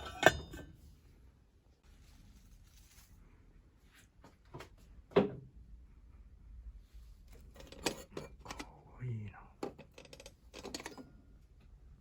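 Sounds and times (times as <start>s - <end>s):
knocks and clicks of objects handled: 9.6s - 11.1s.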